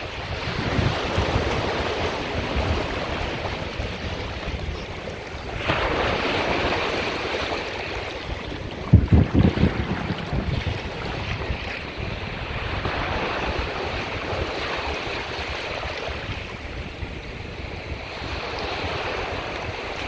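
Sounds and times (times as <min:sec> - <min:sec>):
wind buffeting microphone: 0:00.0 - 0:20.0
surf breaking: 0:01.1 - 0:15.0.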